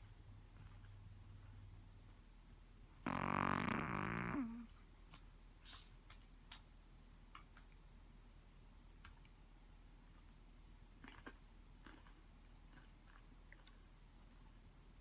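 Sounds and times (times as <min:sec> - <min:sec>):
sleeping dog low buzzy vocal: 0:03.0 - 0:04.7.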